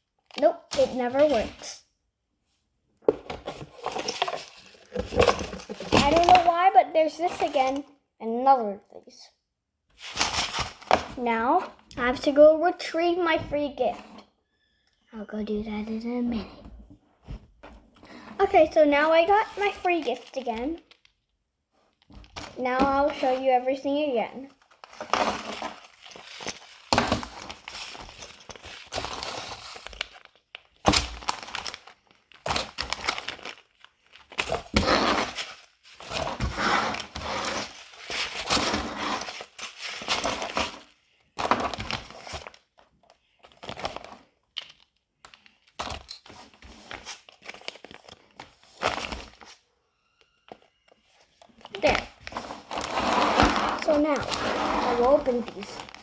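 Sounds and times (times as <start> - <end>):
objects knocking when set down: 3.0 - 6.3
wrappers crinkling and rustling: 3.4 - 6.6, 19.3 - 23.4, 24.5 - 56.0.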